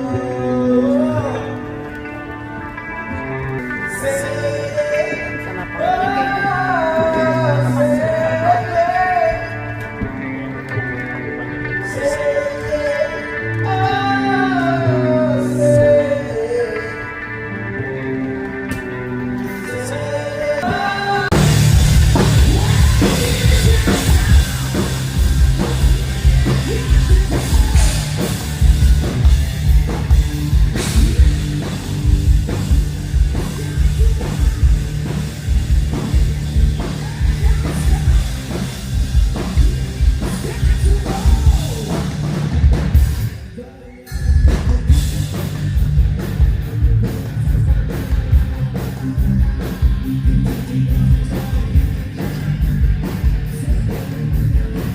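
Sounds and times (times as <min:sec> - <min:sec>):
rock band playing heavy metal: 0:00.0 - 0:54.9.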